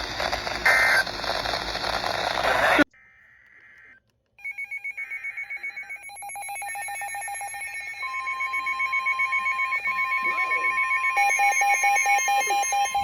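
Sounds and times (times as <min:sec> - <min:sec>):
steady alarm tone: 0:00.0 - 0:02.8, 0:04.4 - 0:13.0
pulsing electronic alert beeps: 0:04.4 - 0:13.0.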